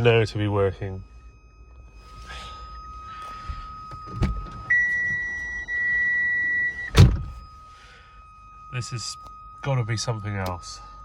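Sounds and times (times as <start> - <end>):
car buzzer high tone: 1.6 - 11.0
heavy thump: 6.9 - 7.4.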